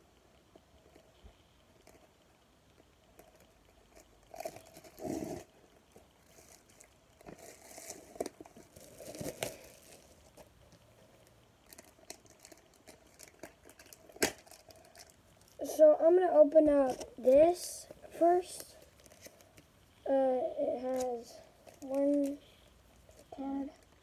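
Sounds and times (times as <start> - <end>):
card packaging crinkled and torn: 6.3 - 10.5, 11.6 - 15.6, 18.6 - 19.7, 20.9 - 22.4.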